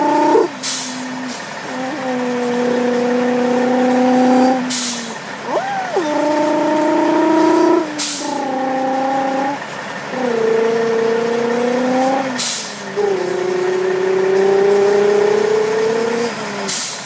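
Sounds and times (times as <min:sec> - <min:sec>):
man imitating engine with voice: 0:00.0 - 0:17.0.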